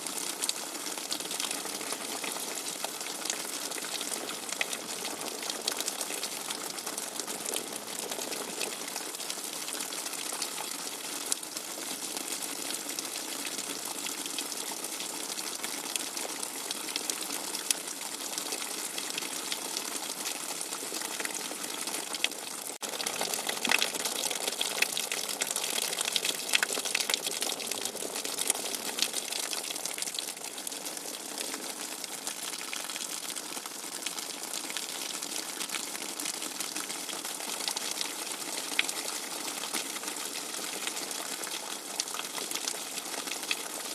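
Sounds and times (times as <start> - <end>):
water gushing: 0.0 - 43.9
hard rain: 18.5 - 43.9.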